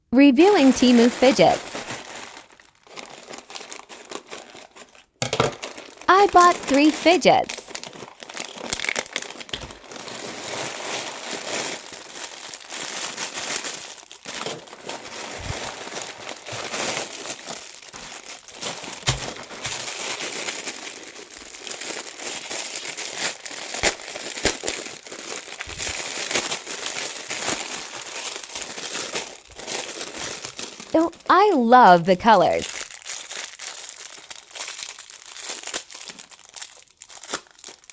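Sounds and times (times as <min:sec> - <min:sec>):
plastic packaging crinkling: 0:00.4 - 0:31.3, 0:32.4 - 0:37.9.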